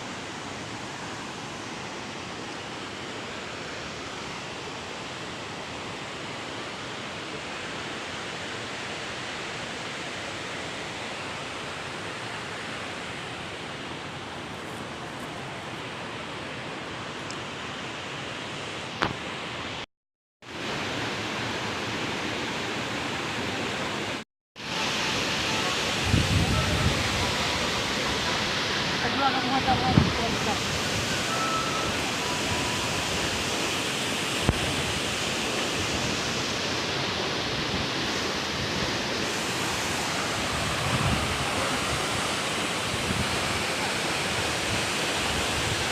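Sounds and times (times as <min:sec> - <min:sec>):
waterfall rushing: 0:20.6 - 0:45.9.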